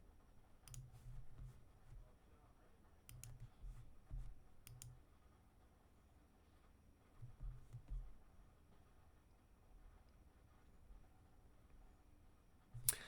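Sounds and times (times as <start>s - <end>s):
computer mouse clicks: 0.6s - 0.9s, 3.1s - 3.6s, 4.6s - 5.0s.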